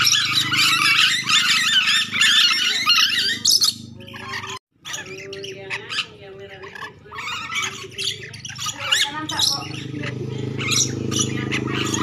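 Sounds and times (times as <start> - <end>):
parrots chattering and screeching: 0.0 - 12.0.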